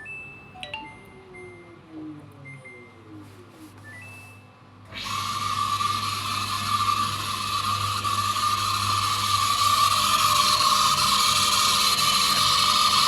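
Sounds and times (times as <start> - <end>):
tumble dryer motor running: 4.9 - 13.0.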